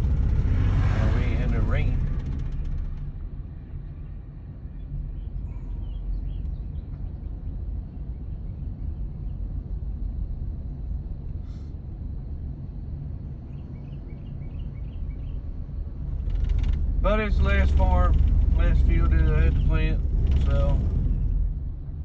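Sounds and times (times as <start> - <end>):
vehicle engine low rumble: 0.0 - 22.0
faint bird chirps: 4.0 - 7.5.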